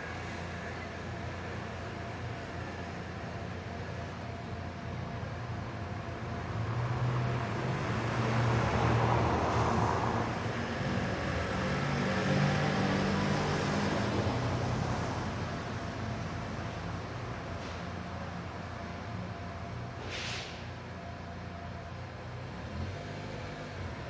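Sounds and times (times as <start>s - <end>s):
road traffic hum: 0.0s - 24.0s
engine passing: 6.6s - 18.4s, 19.8s - 24.0s
vehicle passing close: 6.7s - 16.4s.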